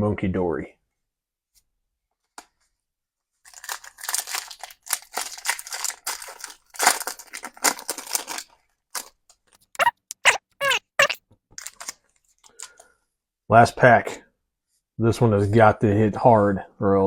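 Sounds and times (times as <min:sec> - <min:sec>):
foil wrapper crinkling and tearing: 0:03.5 - 0:08.4.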